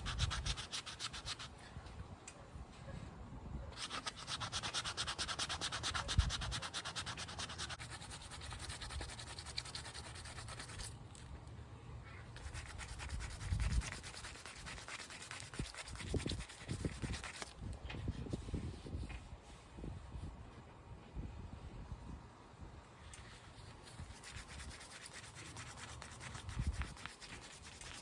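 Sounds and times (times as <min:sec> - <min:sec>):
sandpaper rubbing on plastic: 0:00.0 - 0:01.6, 0:03.8 - 0:11.0, 0:12.4 - 0:17.5, 0:23.8 - 0:28.0.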